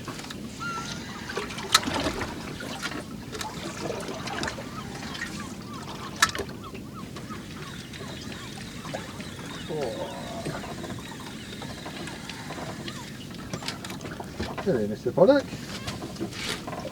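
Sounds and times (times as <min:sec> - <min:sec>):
water lapping against boat hull: 0:00.0 - 0:16.9
sharp clicks: 0:07.1 - 0:14.3.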